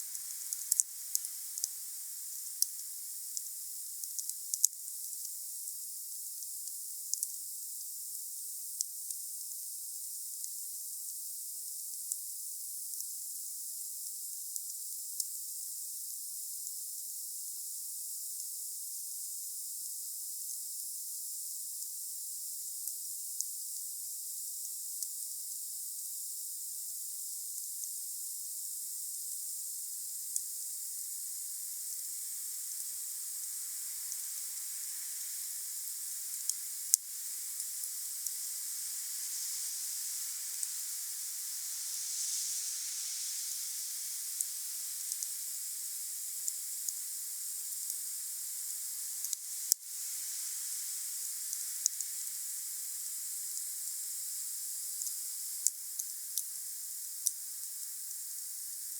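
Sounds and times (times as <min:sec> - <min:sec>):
wood fire hissing: 0:29.8 - 0:58.6.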